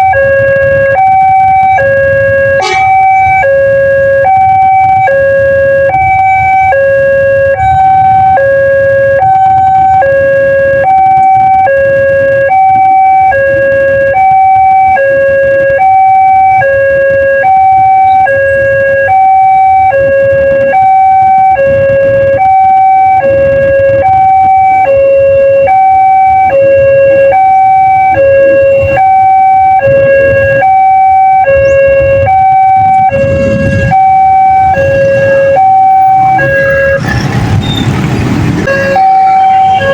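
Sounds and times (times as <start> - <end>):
two-tone level crossing siren: 0.0 - 37.2, 38.6 - 39.9
low rumble: 31.5 - 39.9.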